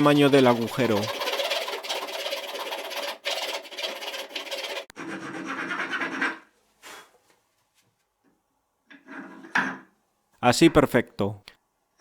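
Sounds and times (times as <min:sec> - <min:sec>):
screw rasping in wood: 0:00.0 - 0:06.4.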